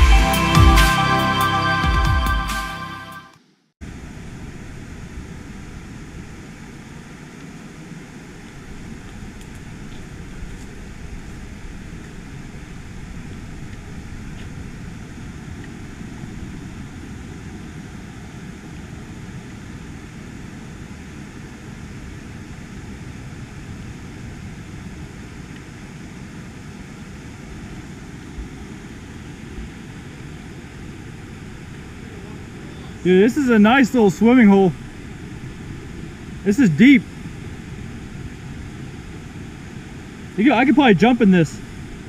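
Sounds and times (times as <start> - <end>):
creek water rushing: 26.4 - 42.0.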